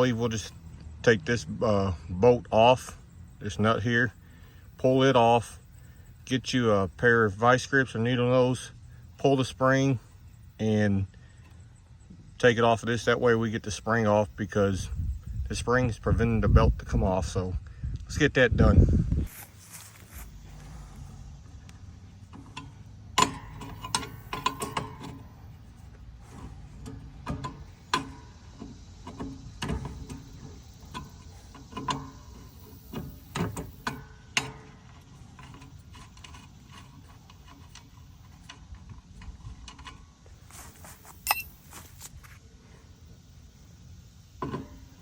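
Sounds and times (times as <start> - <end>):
metal clicks and clanks: 21.0 - 40.6.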